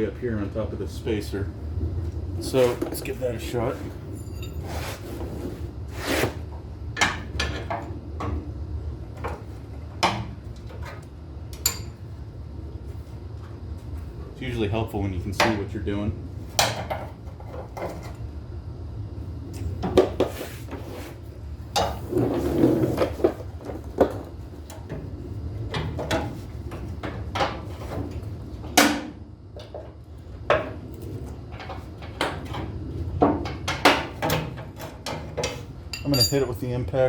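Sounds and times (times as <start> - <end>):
low hum: 0.0 - 4.7
hand tools clanking against steel: 4.2 - 4.7, 35.9 - 36.8.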